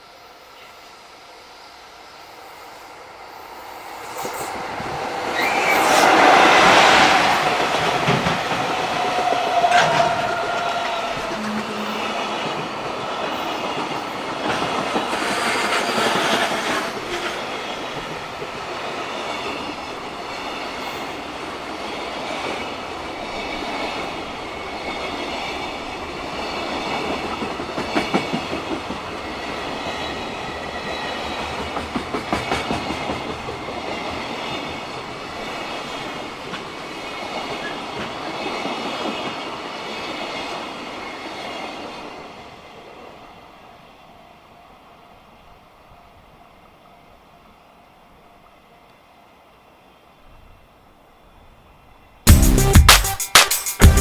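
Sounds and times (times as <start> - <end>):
freight train passing: 0.0 - 52.8
train wheels clacking on rail joints: 6.6 - 19.8, 31.3 - 34.4.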